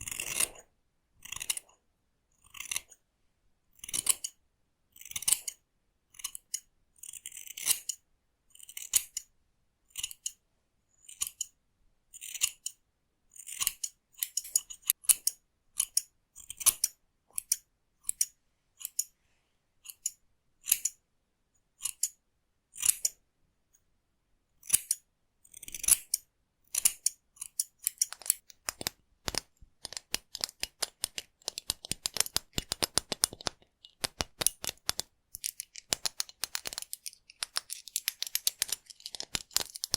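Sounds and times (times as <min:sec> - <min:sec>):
scissors snipping hair: 0:24.6 - 0:39.9.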